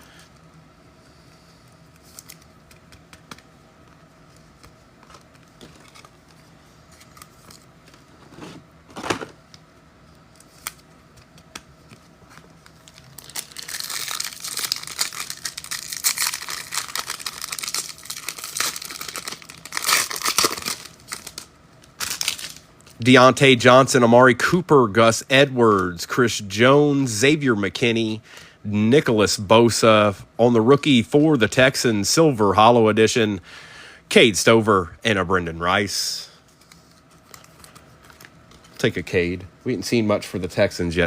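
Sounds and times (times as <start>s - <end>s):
foil wrapper tearing and crinkling: 12.7s - 23.0s.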